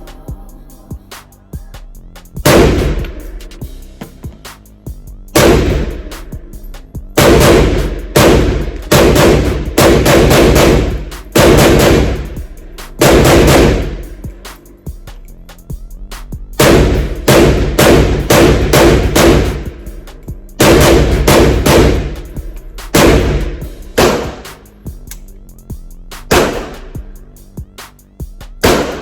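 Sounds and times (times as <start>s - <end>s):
loud pistol shots: 2.4s - 3.1s, 5.4s - 6.0s, 7.2s - 12.4s, 13.0s - 14.0s, 16.6s - 19.8s, 20.6s - 22.2s, 22.9s - 24.6s, 26.3s - 27.0s, 28.6s - 29.0s.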